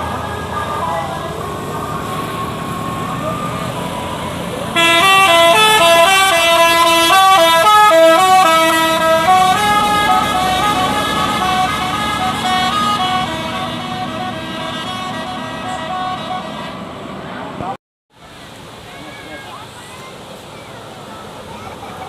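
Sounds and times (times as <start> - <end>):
bus multi-tone horn melody: 0.0 - 17.2.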